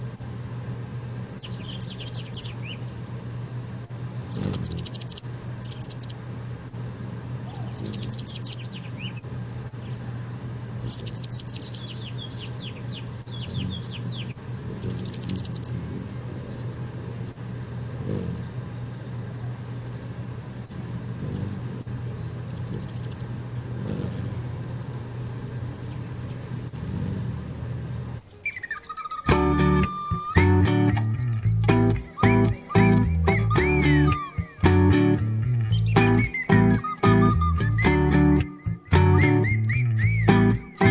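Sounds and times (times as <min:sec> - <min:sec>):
hummingbirds chattering: 0:01.4 - 0:06.2, 0:07.4 - 0:40.9
low hum: 0:29.3 - 0:40.9.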